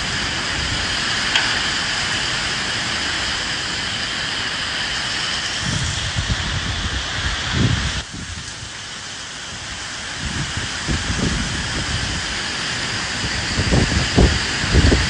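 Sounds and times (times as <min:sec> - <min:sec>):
steady rain hissing: 0:00.0 - 0:15.0
wind gusts rumbling: 0:00.0 - 0:15.0.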